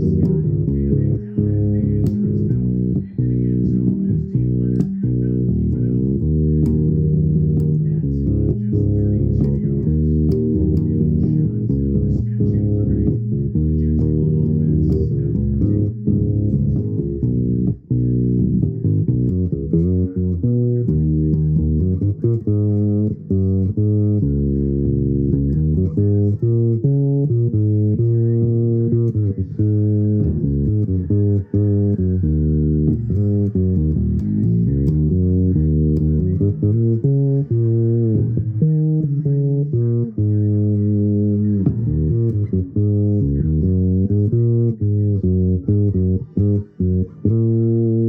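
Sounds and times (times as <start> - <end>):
bass guitar plucked notes: 0.0 - 48.0.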